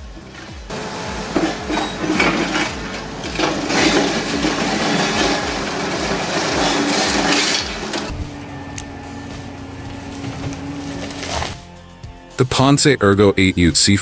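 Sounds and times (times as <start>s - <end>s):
heavy machine crushing material: 0.8s - 11.7s
steady machine hum: 8.1s - 11.7s.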